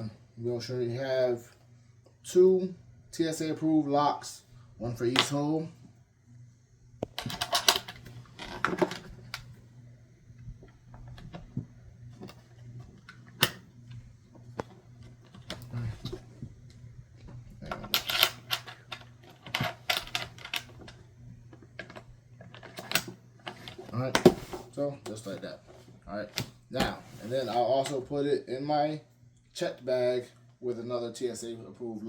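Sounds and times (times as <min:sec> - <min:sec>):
padlocks clicking on plastic case: 0:07.0 - 0:09.0, 0:17.8 - 0:21.0.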